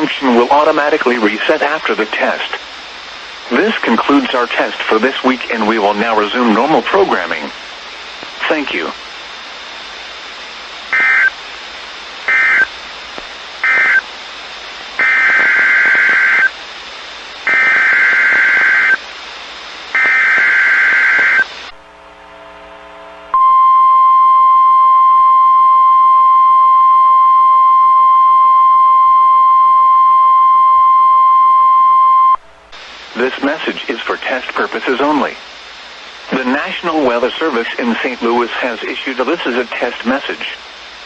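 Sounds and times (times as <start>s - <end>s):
radio static: 0.0s - 21.8s, 32.0s - 41.0s
digital data bursts: 10.9s - 11.4s, 12.3s - 12.7s, 13.6s - 14.1s, 15.0s - 16.6s, 17.4s - 19.0s, 19.9s - 21.5s
steady warning alarm tone: 10.9s - 11.4s, 12.3s - 12.7s, 13.6s - 14.1s, 15.0s - 16.6s, 17.4s - 19.0s, 19.9s - 21.6s.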